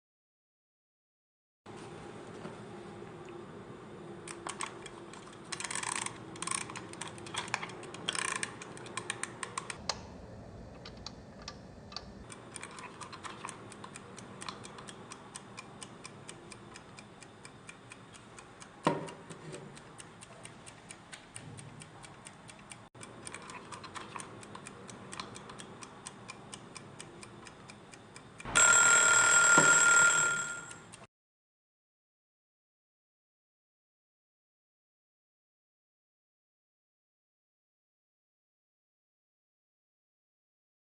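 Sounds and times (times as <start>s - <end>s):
kitchen timer ticking: 12.2s - 31.1s
timer bell ringing: 28.5s - 30.9s.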